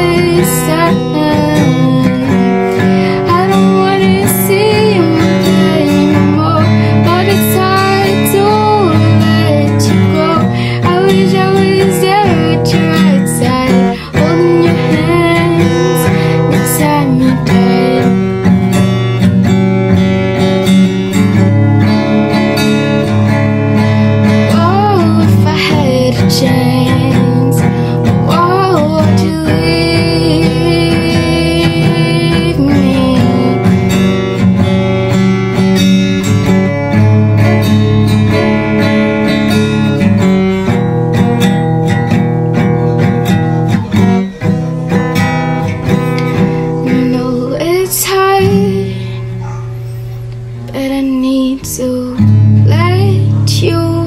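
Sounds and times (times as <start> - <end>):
person singing ballad: 0.0 - 19.1, 24.0 - 34.4, 45.8 - 49.4, 50.7 - 54.0
acoustic guitar strumming chords: 0.0 - 54.0.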